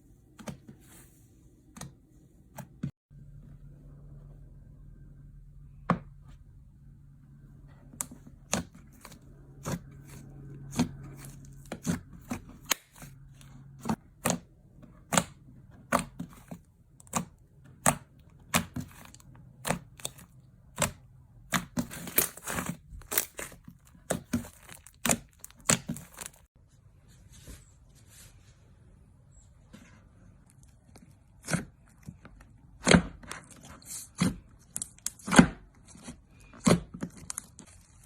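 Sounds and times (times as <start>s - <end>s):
sharp snaps and crunches: 15.0s - 26.5s, 30.4s - 38.0s.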